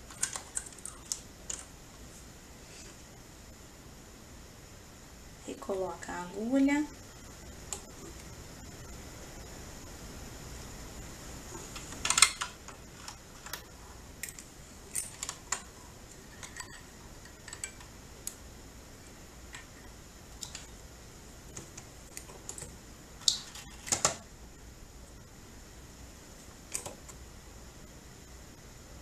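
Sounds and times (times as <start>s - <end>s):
small clicks of machine parts: 16.3s - 18.4s.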